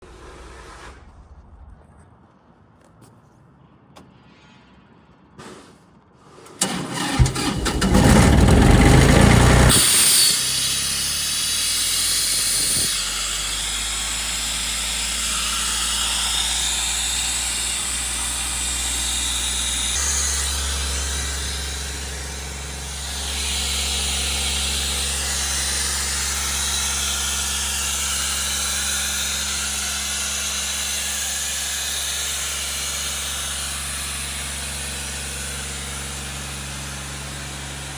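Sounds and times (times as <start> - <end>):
diesel engine starter cranking: 6.5 - 29.7
diesel engine running: 6.6 - 37.9
high hiss: 9.0 - 34.4.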